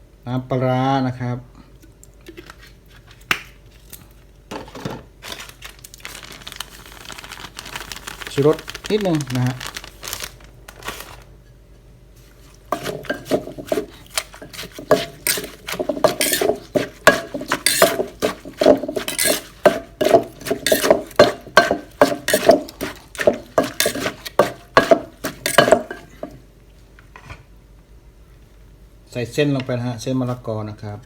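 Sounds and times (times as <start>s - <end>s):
pestle knocking in a mortar: 12.7s - 26.4s.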